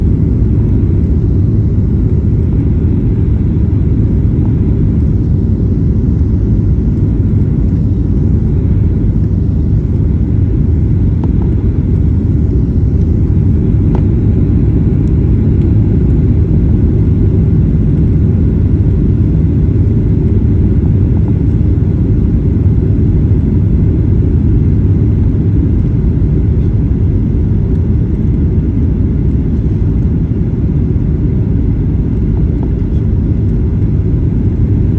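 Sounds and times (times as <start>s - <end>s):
airliner low rumble: 0.0s - 34.9s.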